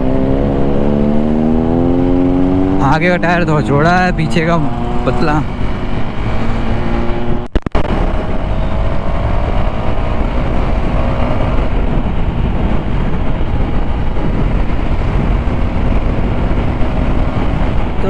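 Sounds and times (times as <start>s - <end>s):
motorcycle engine running: 0.0s - 7.6s
wind rumble on microphone: 0.0s - 18.0s.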